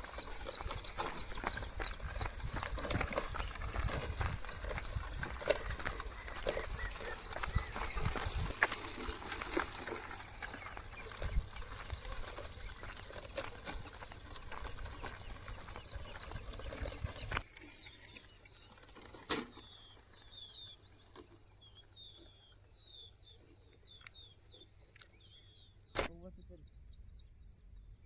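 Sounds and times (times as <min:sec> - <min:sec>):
birds chirping: 0:00.0 - 0:28.0
sharp click: 0:26.0 - 0:26.2.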